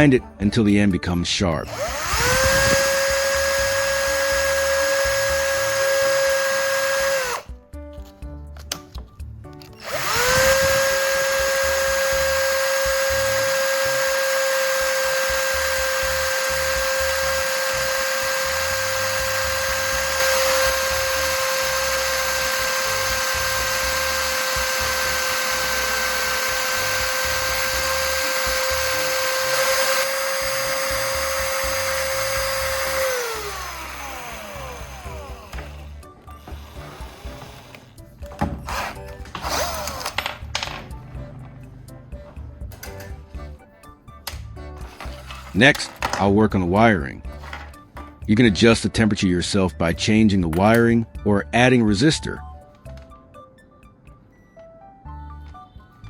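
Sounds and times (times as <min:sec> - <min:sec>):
electric drill whining: 0:01.6 - 0:07.6, 0:09.8 - 0:38.0, 0:38.7 - 0:40.4
screw grinding on sandpaper: 0:36.4 - 0:38.0.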